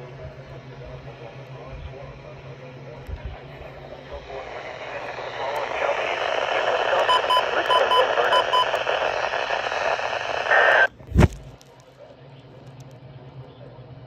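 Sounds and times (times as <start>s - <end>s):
radio static hiss: 0.5s - 11.4s
short high beeps: 7.0s - 8.8s.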